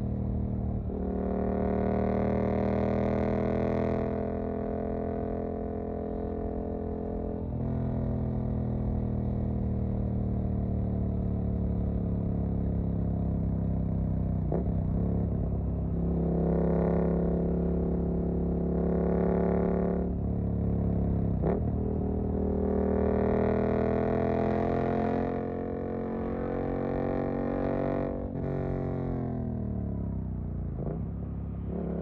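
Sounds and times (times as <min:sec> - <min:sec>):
motorcycle engine revving: 0:30.8 - 0:32.0.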